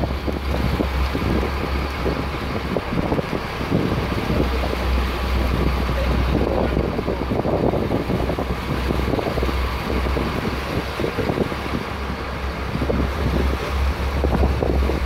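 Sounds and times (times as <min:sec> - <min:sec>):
steady low rumble: 0:00.0 - 0:15.0
wind buffeting microphone: 0:00.0 - 0:15.0.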